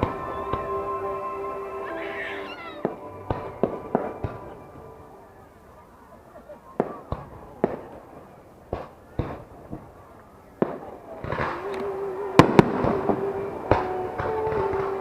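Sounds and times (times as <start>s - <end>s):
crackling firework bursts: 6.7s - 15.0s.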